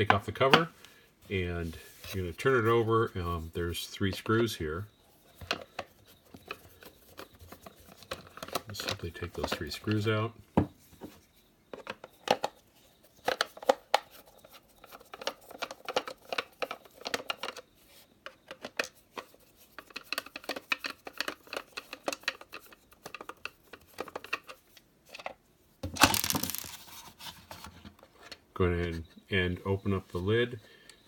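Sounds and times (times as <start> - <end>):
plastic parts clattering: 5.3 - 10.2, 13.2 - 17.7, 18.4 - 28.4
plastic housing being handled: 5.3 - 29.2.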